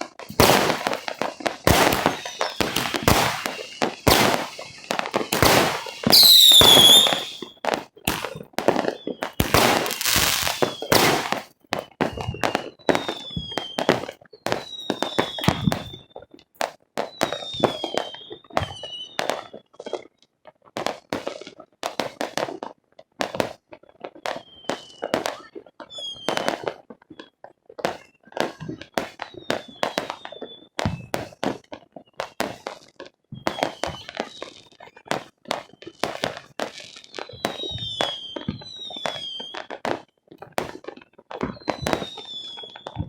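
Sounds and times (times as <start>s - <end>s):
fireworks bangs and crackles: 0.0s - 43.0s
falling firework whistles: 0.2s - 16.3s, 17.0s - 20.1s, 24.3s - 26.7s, 27.9s - 32.6s, 33.4s - 39.8s, 41.4s - 43.0s.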